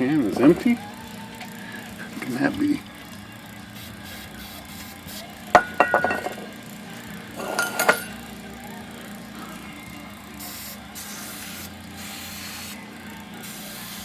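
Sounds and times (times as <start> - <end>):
metallic clinks of spray cans: 3.8 - 6.5, 7.4 - 8.3
spray can knock: 5.5 - 6.5.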